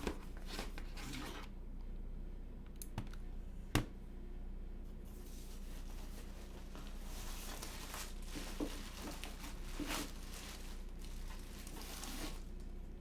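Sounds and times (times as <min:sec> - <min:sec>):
plastic packaging crinkling: 0:05.6 - 0:12.7.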